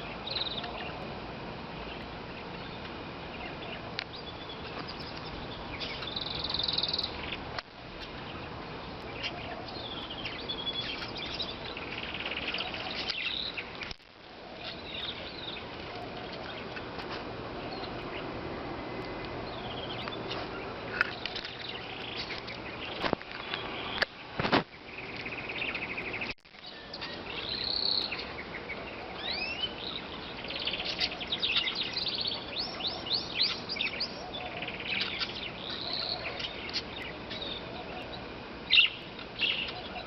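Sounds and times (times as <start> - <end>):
birds chirping and singing: 0.0 - 40.0.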